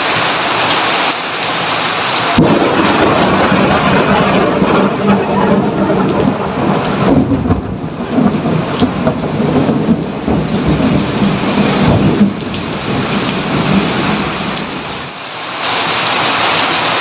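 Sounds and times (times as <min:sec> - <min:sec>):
heavy rain: 0:00.0 - 0:17.0
thunder rumbling: 0:01.8 - 0:15.1.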